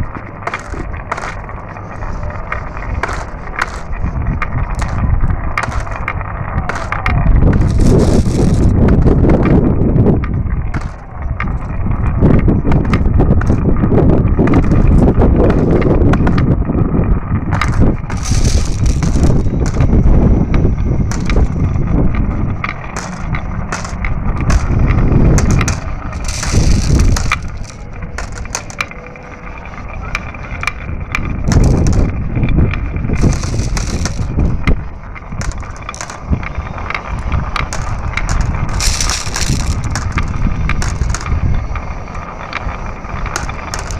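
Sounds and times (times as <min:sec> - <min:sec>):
marbles rolling down track: 0:00.0 - 0:43.9.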